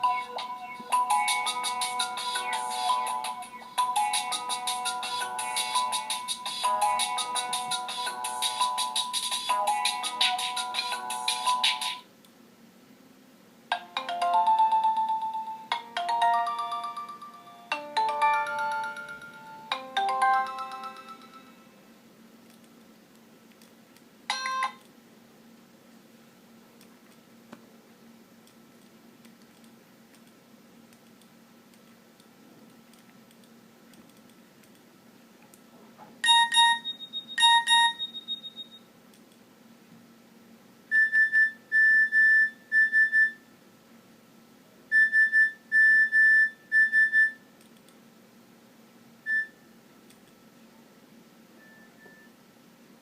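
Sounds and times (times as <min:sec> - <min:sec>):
mobile phone alert beeps: 0:36.2 - 0:38.8.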